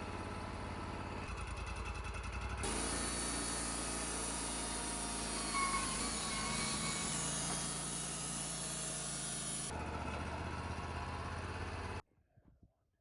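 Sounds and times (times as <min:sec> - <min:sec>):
sawmill engine running: 0:00.0 - 0:12.0
saw blade cutting log hiss: 0:02.6 - 0:09.7.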